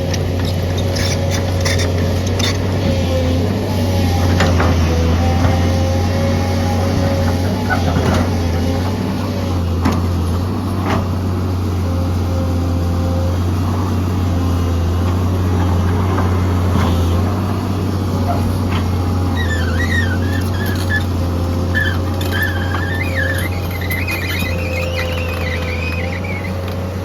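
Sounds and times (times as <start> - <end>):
excavator diesel engine running: 0.0 - 27.0
wavering high-pitched squeal: 19.3 - 21.1, 21.7 - 26.7.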